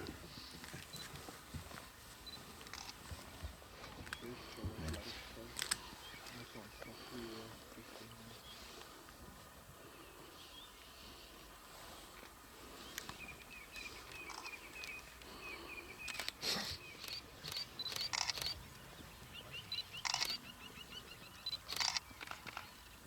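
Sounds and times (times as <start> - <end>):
small birds chirping: 0.0 - 23.0
camera shutters firing: 17.0 - 18.6.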